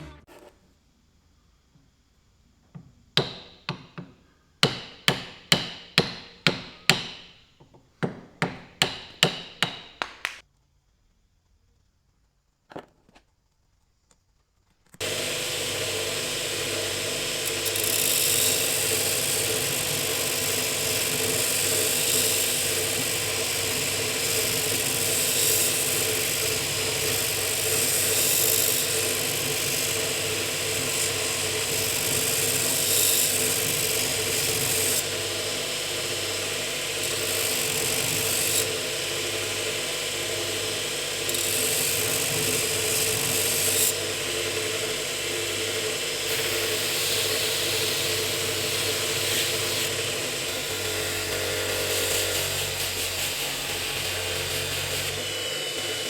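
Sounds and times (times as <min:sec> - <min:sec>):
power tool humming: 0:03.2 - 0:07.4, 0:08.0 - 0:10.4, 0:15.0 - 0:56.0
sharp hammer blows: 0:04.6 - 0:07.4, 0:08.4 - 0:10.4.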